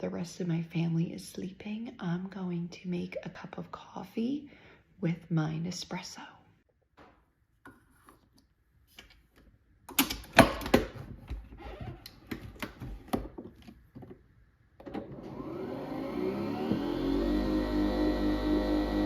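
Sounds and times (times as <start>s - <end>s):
coffee machine motor whirring: 15.2s - 19.0s.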